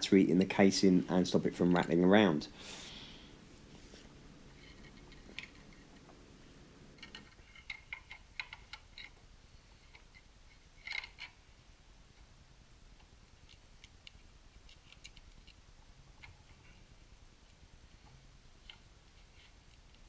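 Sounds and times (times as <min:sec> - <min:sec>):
faint low hum: 0:00.0 - 0:20.0
plastic parts clicking: 0:10.8 - 0:11.4.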